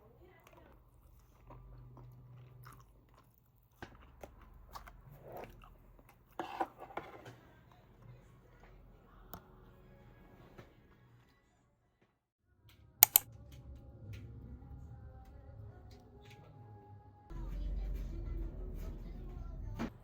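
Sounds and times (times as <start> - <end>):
biting and chewing food: 0.0 - 6.4.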